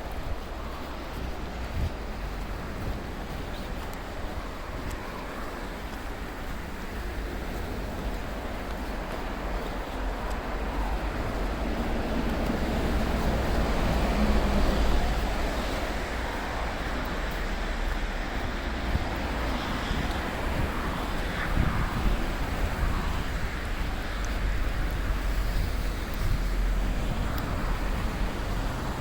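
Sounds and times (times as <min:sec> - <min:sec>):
wind rumble on microphone: 0:00.0 - 0:29.0
vehicle passing: 0:09.9 - 0:29.0.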